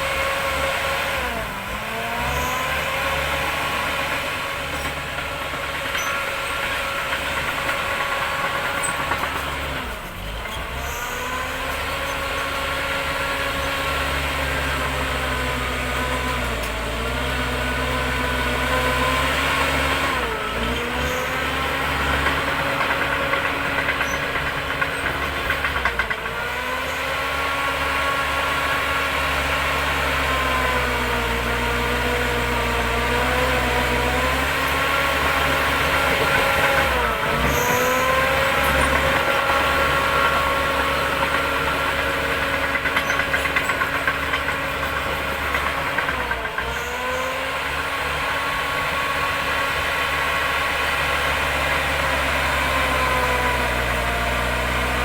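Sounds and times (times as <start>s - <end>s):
diesel engine running: 0.0s - 55.0s.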